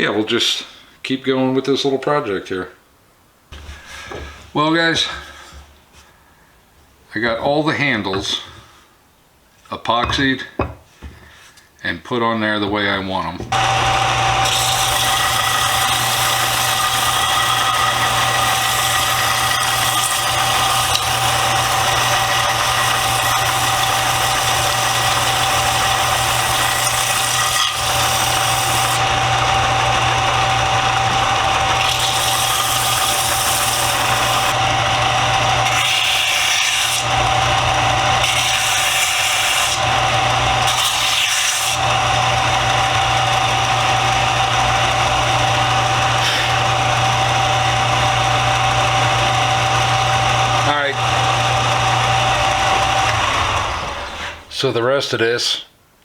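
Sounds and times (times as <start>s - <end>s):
power sander grinding wood: 12.8s - 54.9s.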